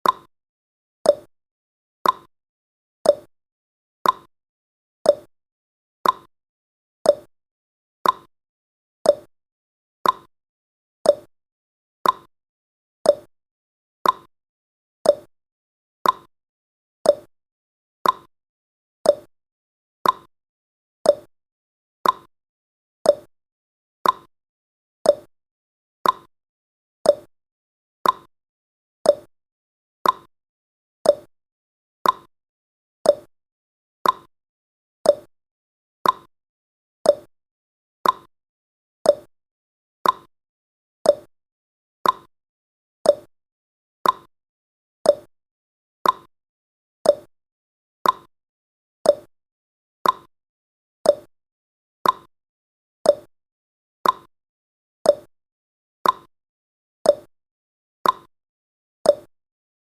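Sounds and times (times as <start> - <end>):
clock tick-tock: 0.0 - 0.3, 1.1 - 1.3, 2.0 - 2.3, 3.1 - 3.3, 4.0 - 4.3, 5.1 - 5.3, 6.0 - 6.3, 7.1 - 7.3, 8.0 - 8.3, 9.1 - 9.3, 10.0 - 10.3, 11.1 - 11.3, 12.0 - 12.3, 13.1 - 13.3, 14.0 - 14.3, 15.0 - 15.3, 16.0 - 16.3, 17.1 - 17.3, 18.0 - 18.3, 19.0 - 19.3, 20.0 - 20.3, 21.0 - 21.3, 22.0 - 22.3, 23.0 - 23.3, 24.0 - 24.3, 25.0 - 25.3, 26.0 - 26.3, 27.0 - 27.3, 28.0 - 28.3, 29.0 - 29.3, 30.0 - 30.3, 31.0 - 31.3, 32.0 - 32.3, 33.0 - 33.3, 34.0 - 34.3, 35.0 - 35.3, 36.0 - 36.3, 37.0 - 37.3, 38.0 - 38.3, 39.0 - 39.3, 40.0 - 40.3, 41.0 - 41.3, 42.0 - 42.3, 43.0 - 43.3, 44.0 - 44.3, 45.0 - 45.3, 46.0 - 46.3, 47.0 - 47.3, 48.0 - 48.3, 49.0 - 49.3, 50.0 - 50.3, 51.1 - 51.3, 52.0 - 52.3, 53.1 - 53.3, 54.0 - 54.3, 55.1 - 55.3, 56.0 - 56.3, 57.1 - 57.3, 58.0 - 58.3, 59.1 - 59.3.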